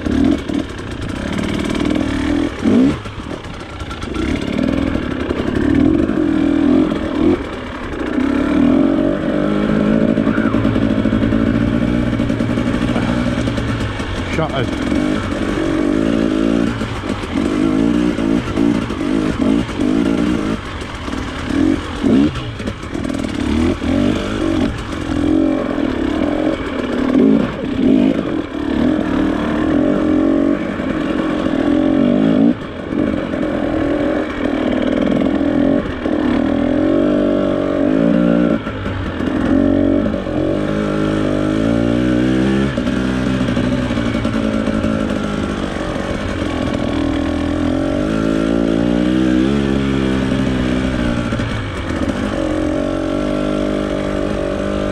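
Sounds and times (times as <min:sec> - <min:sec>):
trail motorcycle engine accelerating: 0:00.0 - 0:54.9.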